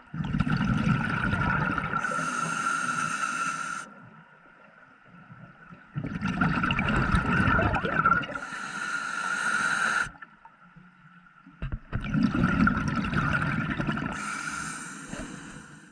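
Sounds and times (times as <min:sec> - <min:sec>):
diver breathing through regulator: 0:02.0 - 0:03.9, 0:08.3 - 0:10.2, 0:14.1 - 0:15.9
gurgling exhaust bubbles: 0:06.0 - 0:08.4, 0:12.0 - 0:14.2.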